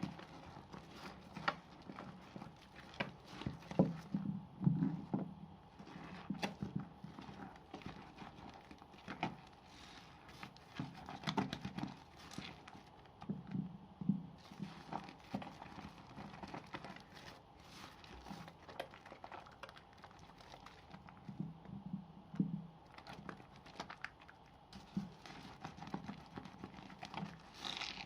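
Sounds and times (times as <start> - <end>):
wet soap squelching: 0.0 - 4.2, 4.8 - 28.0.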